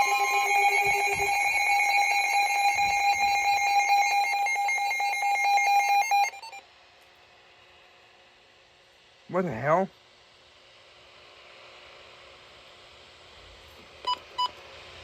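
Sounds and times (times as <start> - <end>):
harsh fluttering alarm tone: 0.0 - 6.7.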